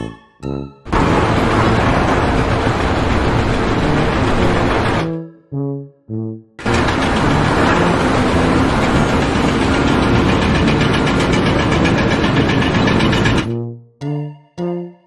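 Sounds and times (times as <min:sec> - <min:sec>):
loud pulsing engine: 0:06.6 - 0:13.6.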